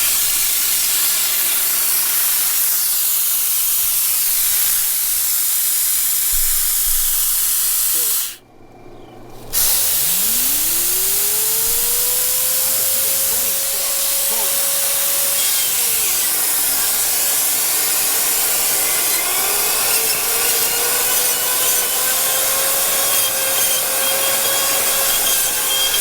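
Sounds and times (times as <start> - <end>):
compressed air hissing through hose: 0.0 - 8.4, 9.4 - 26.0
rising whine: 9.4 - 22.9.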